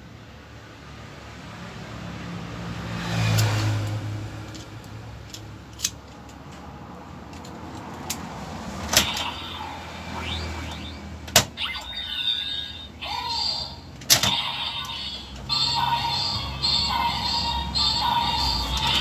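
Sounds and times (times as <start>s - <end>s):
toy electronic hum: 9.0s - 19.0s.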